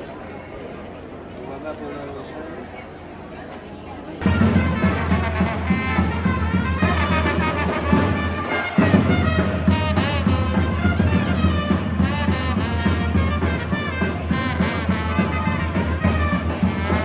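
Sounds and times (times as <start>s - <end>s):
brass band playing lively tune: 4.2s - 17.0s.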